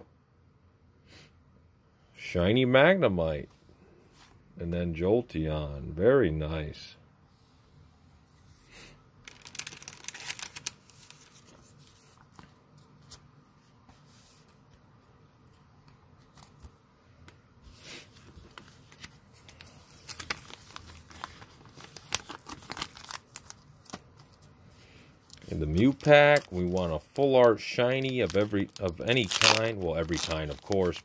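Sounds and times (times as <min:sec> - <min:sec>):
foil wrapper tearing and crinkling: 0:09.2 - 0:11.7, 0:18.4 - 0:24.4, 0:25.3 - 0:31.0.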